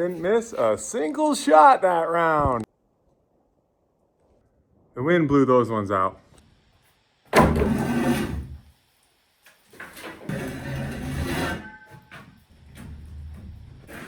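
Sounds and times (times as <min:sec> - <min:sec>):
vent baffles scraping against wood: 0:07.5 - 0:08.6, 0:09.7 - 0:12.2.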